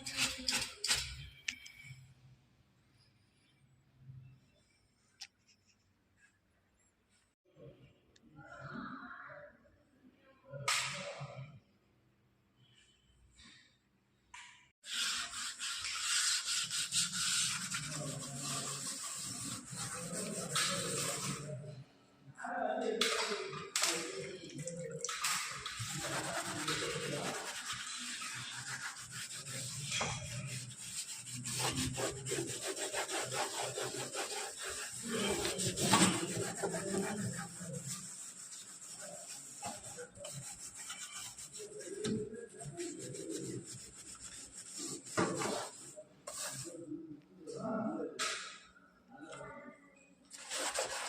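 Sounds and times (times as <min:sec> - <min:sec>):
scrubbing a hard surface: 0:00.0 - 0:01.3, 0:14.8 - 0:21.6, 0:24.0 - 0:46.8, 0:50.3 - 0:51.0.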